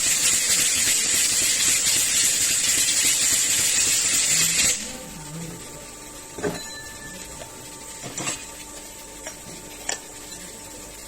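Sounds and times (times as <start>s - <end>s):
faint machine hum: 0.0s - 11.0s.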